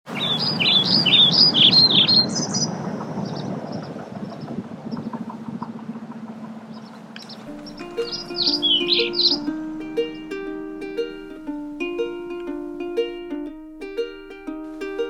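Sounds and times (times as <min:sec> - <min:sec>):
songbird twittering: 0:00.1 - 0:10.4
steady outdoor hiss: 0:00.1 - 0:15.0.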